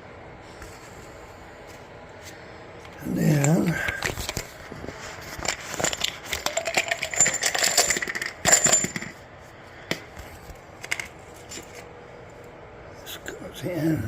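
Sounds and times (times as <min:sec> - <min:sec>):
metal tools clinking: 0:05.4 - 0:09.2.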